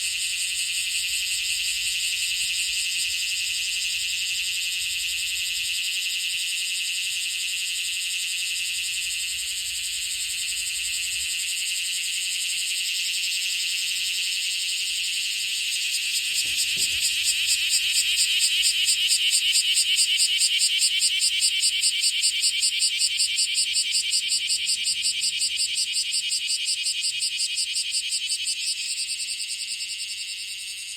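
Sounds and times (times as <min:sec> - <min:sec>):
cicada buzzing: 0:12.8 - 0:30.9.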